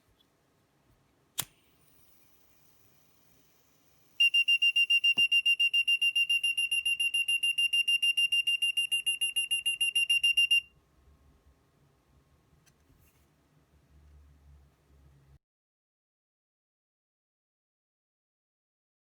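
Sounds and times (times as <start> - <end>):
rapid high-pitched buzzer beeping: 4.2 - 10.6.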